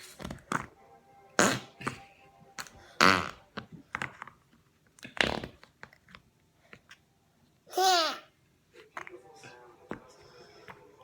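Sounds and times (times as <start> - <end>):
fart sounds: 1.4 - 3.8, 5.0 - 5.8.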